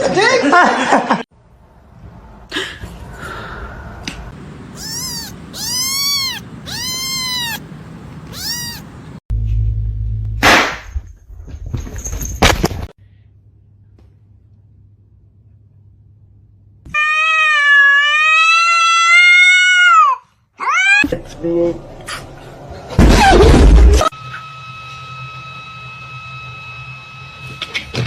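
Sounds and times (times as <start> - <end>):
cat meowing: 4.8 - 9.2.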